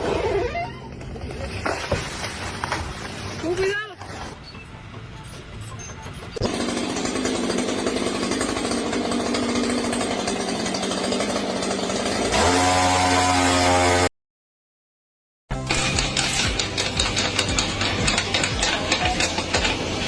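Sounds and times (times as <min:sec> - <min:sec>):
motor-driven machine running: 0:06.4 - 0:10.0.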